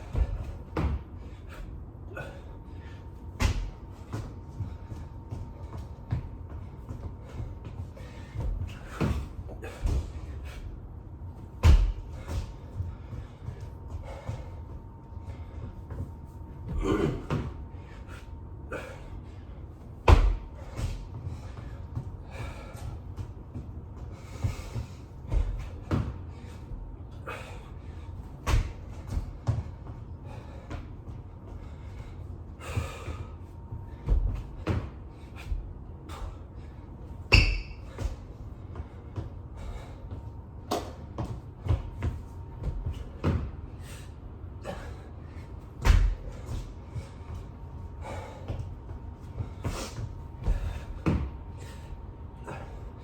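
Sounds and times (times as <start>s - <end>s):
hard breathing: 0.0s - 53.0s
thuds on floor: 11.5s - 14.5s, 20.0s - 22.1s, 45.8s - 47.1s.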